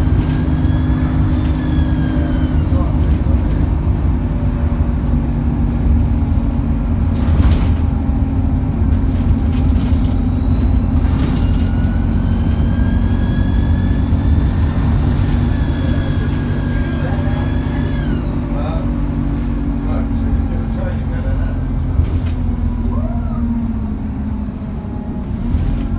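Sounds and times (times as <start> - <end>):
high turbo whine: 0.0 - 5.4, 8.9 - 19.1
bus engine drone: 0.0 - 25.9.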